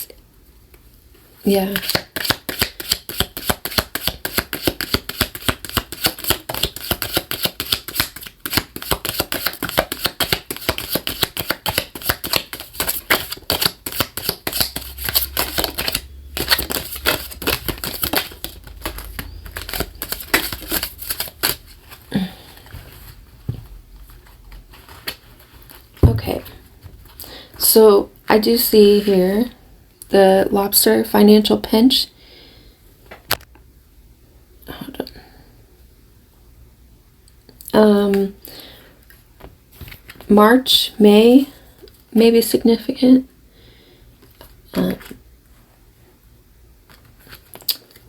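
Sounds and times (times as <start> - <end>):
cards being shuffled: 1.7 - 22.0.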